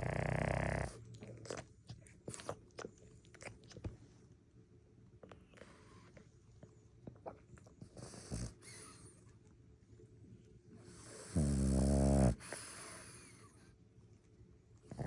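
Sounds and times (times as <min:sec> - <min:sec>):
dog snoring: 0:00.0 - 0:01.6, 0:07.9 - 0:09.1, 0:10.9 - 0:13.6.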